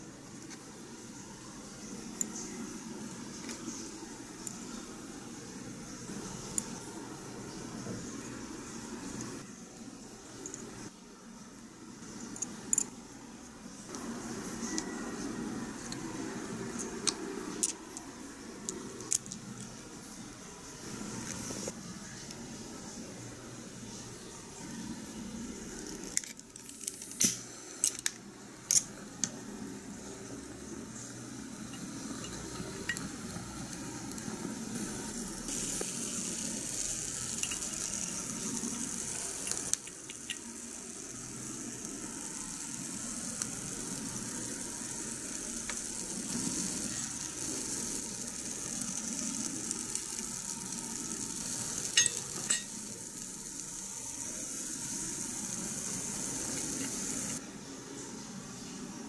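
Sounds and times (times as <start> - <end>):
food sizzling in a pan: 13.9 - 23.0, 23.9 - 57.4.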